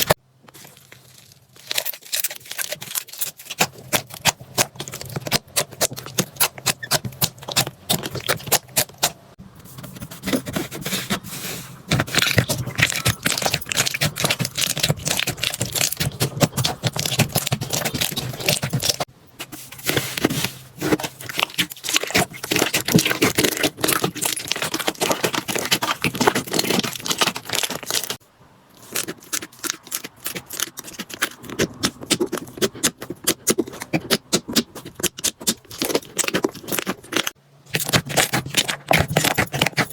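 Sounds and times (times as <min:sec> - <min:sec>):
slime crackling and popping: 0:12.1 - 0:19.0, 0:21.2 - 0:28.2.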